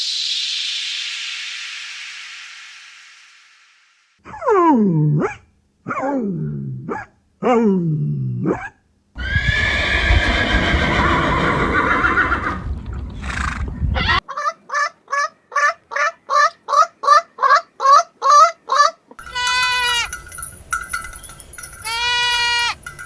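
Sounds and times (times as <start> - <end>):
horse whinny: 9.2 - 12.6, 19.2 - 20.2
long steady bleats: 19.2 - 20.2, 21.8 - 23.0.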